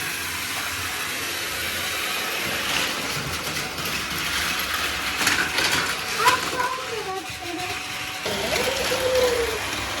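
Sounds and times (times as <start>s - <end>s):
toy train motor whirring: 0.0s - 10.0s.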